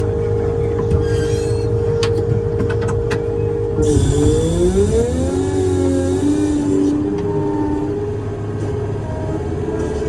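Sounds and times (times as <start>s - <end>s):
diesel machine rumbling: 0.0s - 10.0s
high whine: 3.5s - 10.0s.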